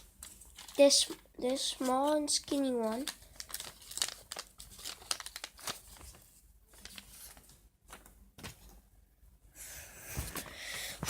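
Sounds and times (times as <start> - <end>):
paper rustling and tapping: 0.0 - 8.8.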